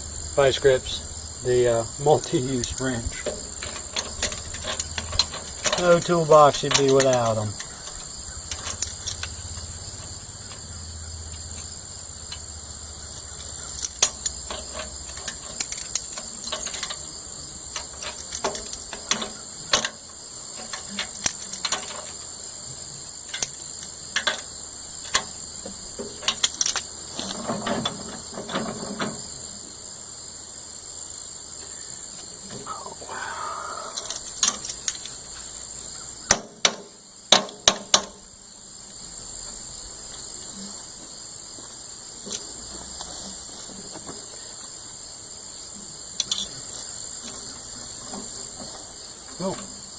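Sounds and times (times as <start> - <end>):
insects droning: 0.0 - 49.9
metallic clicks of hand tools: 2.2 - 10.7, 13.6 - 17.1, 17.7 - 22.2, 23.3 - 29.1, 33.9 - 35.2, 46.2 - 46.6
sharp knocks: 36.3 - 38.2.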